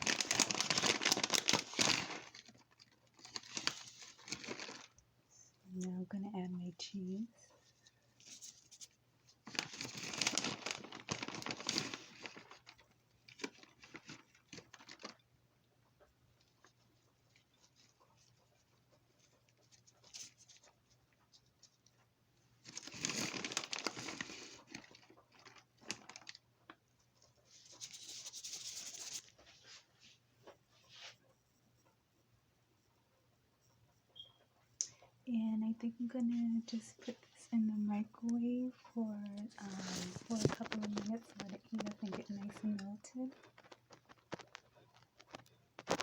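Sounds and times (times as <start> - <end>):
cheese packaging crinkling: 0.0 - 5.1, 8.2 - 15.3, 22.6 - 29.8, 38.0 - 46.0.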